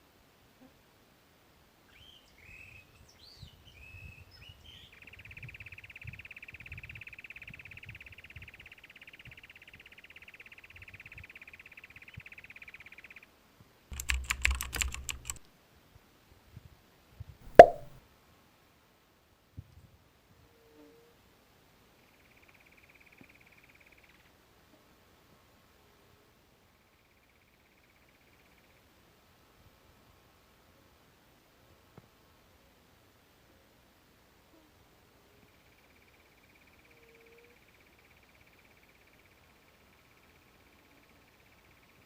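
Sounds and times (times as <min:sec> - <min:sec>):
sharp knock: 0:17.5 - 0:18.0.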